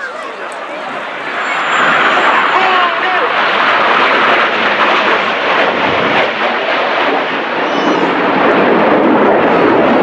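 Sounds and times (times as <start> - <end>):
jets flying past: 0.0 - 10.0.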